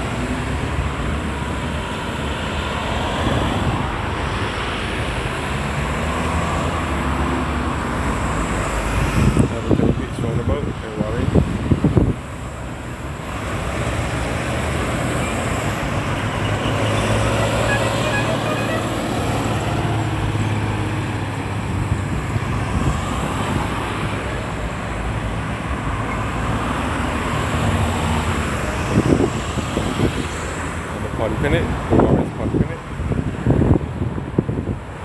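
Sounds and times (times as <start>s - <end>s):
road traffic passing: 0.0s - 35.0s
vehicle engine humming: 0.0s - 35.0s.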